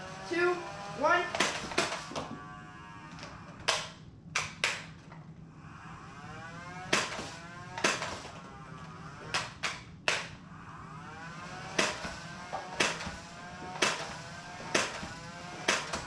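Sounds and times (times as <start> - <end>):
flywheel motor whine: 0.0 - 3.7, 5.1 - 9.7, 10.4 - 16.0
toy blaster firing pops: 1.4 - 2.2, 6.9 - 8.2, 11.8 - 12.1, 12.7 - 13.2, 13.8 - 16.0.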